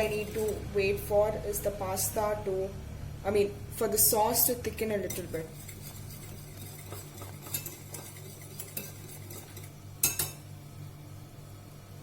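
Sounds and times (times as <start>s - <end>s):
spoon stirring thick sauce: 5.0s - 10.2s
spoon scraping and knocking pot: 5.0s - 10.4s.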